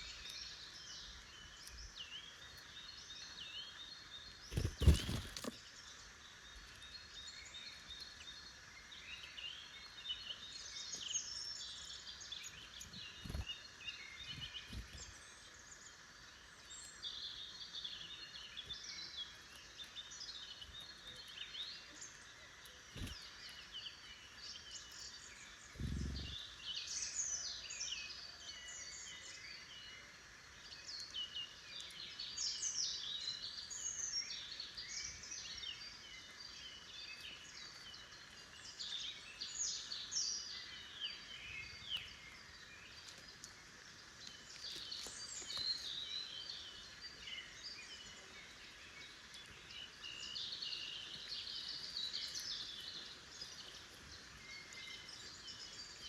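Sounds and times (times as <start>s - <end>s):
songbirds singing: 0.0s - 56.0s.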